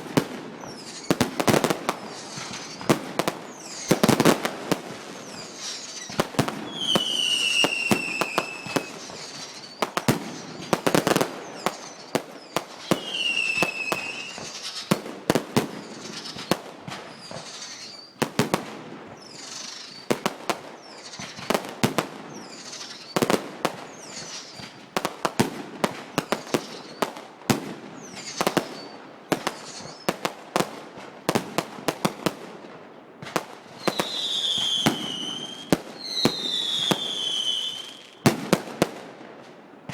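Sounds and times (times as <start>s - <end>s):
fireworks bangs and crackles: 0.0s - 39.9s
falling whistle: 5.2s - 9.9s, 11.4s - 14.8s, 33.8s - 38.2s.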